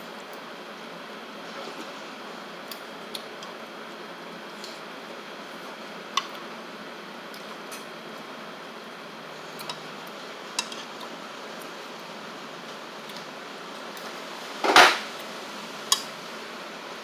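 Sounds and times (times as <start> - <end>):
room noise: 14.0 - 17.0
utensils clinking against dishes: 14.6 - 15.1.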